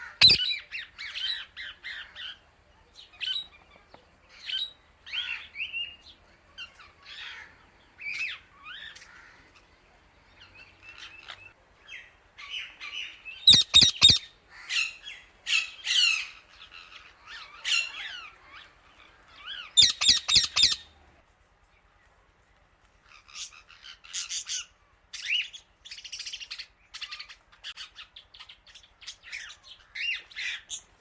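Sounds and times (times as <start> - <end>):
parrot chirping and squawking: 0.0 - 2.3, 12.4 - 18.3, 19.4 - 20.9.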